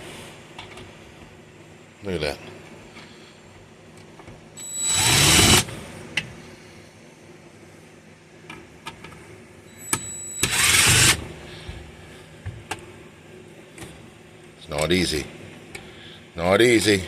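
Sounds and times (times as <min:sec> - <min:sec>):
power tool motor spinning: 0:04.9 - 0:05.7, 0:10.4 - 0:11.2.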